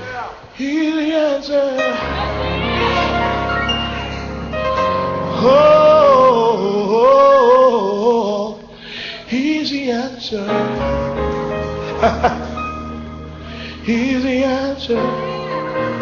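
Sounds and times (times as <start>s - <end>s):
gospel singer vocal runs: 0.5s - 11.1s, 13.5s - 16.0s
instrumental backing: 1.8s - 7.4s, 10.5s - 16.0s.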